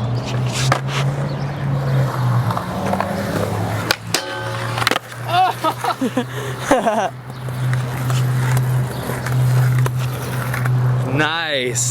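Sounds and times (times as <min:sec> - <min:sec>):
skateboard wheels rolling on concrete: 0:00.0 - 0:11.9
skateboard grinding on rail: 0:00.1 - 0:11.2
skateboard clacking on metal rail: 0:01.9 - 0:05.8.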